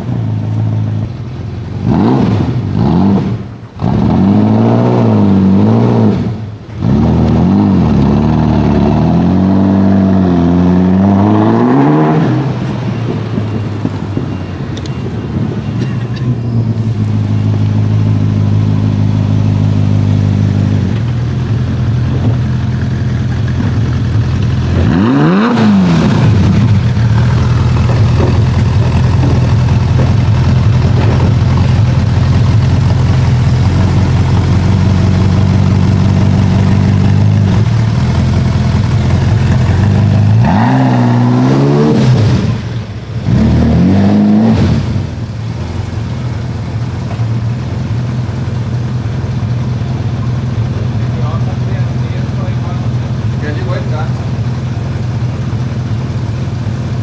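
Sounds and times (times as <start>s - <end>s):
car engine idling: 0.0s - 10.9s, 12.7s - 57.0s
engine revving blips: 1.8s - 21.2s, 23.2s - 45.3s.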